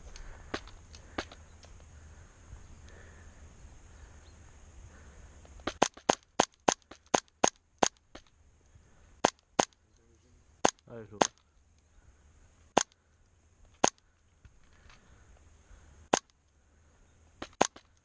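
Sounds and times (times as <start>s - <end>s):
rustle of movement: 0.0s - 7.1s
airsoft gun shots: 5.6s - 8.3s, 17.4s - 17.9s.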